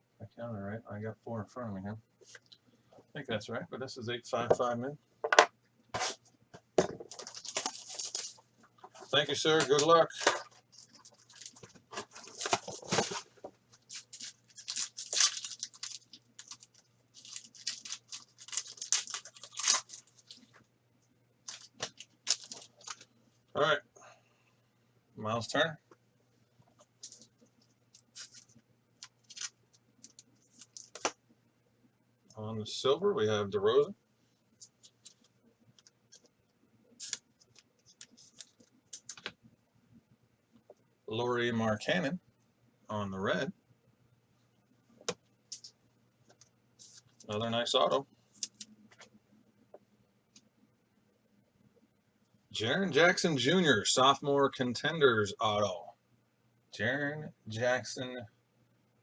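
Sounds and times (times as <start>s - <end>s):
foil wrappers tearing and crinkling: 7.1s - 8.4s, 13.9s - 20.4s, 21.5s - 23.0s, 29.1s - 29.6s.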